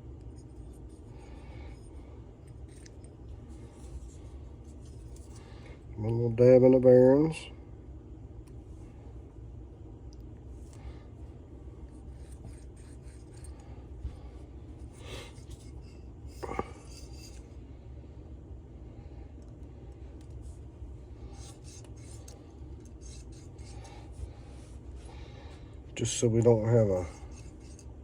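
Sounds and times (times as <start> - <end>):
low hum: 0.0 - 6.8
small parts clicking and rubbing: 0.2 - 5.5, 14.8 - 17.6, 21.3 - 24.2, 27.0 - 28.0.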